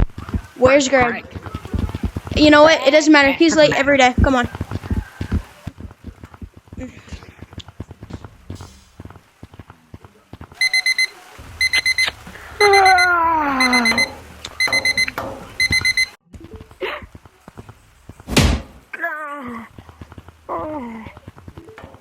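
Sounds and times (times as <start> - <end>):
loud thump: 8.5 - 9.2, 18.3 - 18.8
electronic alarm beeping: 10.6 - 16.2.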